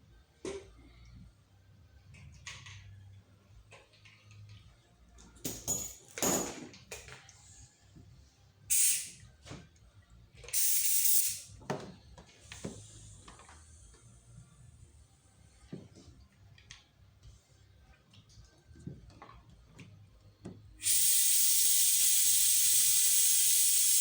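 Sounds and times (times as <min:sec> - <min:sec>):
tools clicking and knocking: 0:05.4 - 0:07.2
hissing air blasts: 0:08.7 - 0:09.2, 0:20.8 - 0:24.0.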